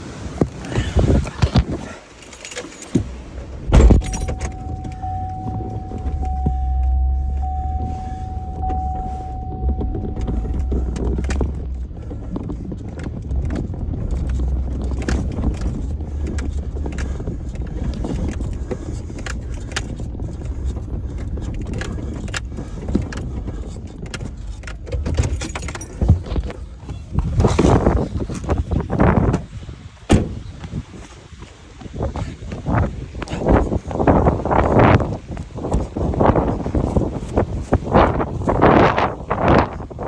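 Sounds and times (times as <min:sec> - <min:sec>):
clinks and knocks: 0:02.2 - 0:28.6
engine running low rumble: 0:02.4 - 0:40.0.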